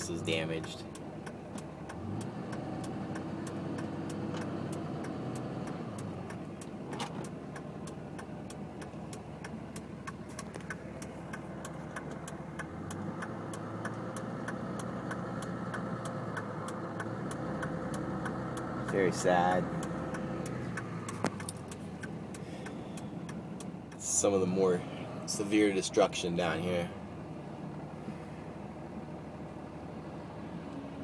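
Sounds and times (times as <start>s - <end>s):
faint regular ticking: 0.0s - 26.9s
tyre and engine rumble: 0.0s - 31.0s.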